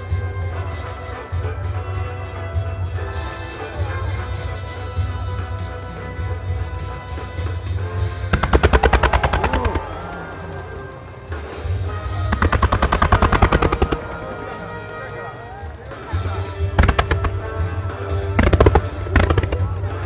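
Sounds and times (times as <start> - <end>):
music over loudspeakers: 0.0 - 20.0
fireworks bursting: 8.0 - 14.9, 16.2 - 20.0.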